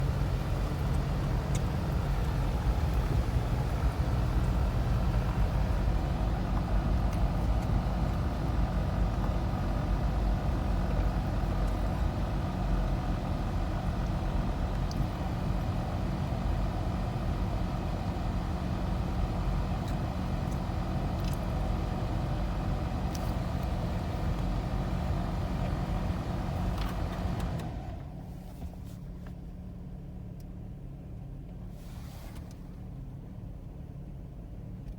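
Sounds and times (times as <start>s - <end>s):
car engine idling roughly: 0.0s - 27.6s.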